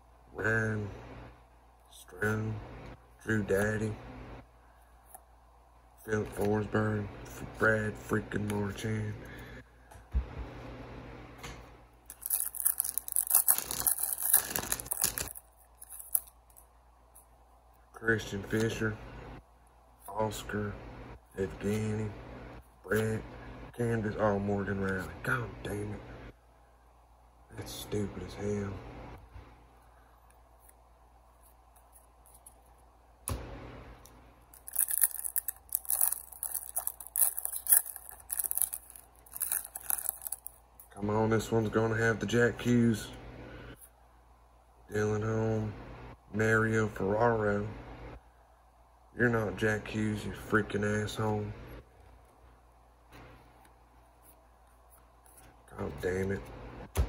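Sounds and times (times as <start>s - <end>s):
foil wrapper tearing and crinkling: 12.1s - 16.3s, 34.6s - 40.5s.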